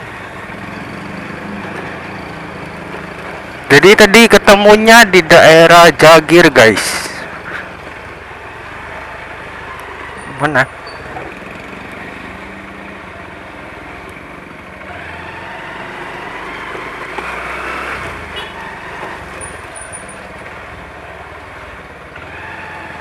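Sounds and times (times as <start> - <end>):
traffic engine and road noise: 0.0 - 23.0
distant siren wail: 8.5 - 10.6, 14.9 - 19.6, 22.2 - 23.0.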